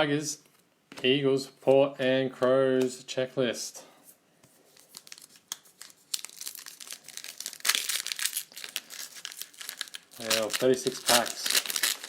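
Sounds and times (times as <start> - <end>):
foil wrapper crinkling and tearing: 4.7 - 12.0.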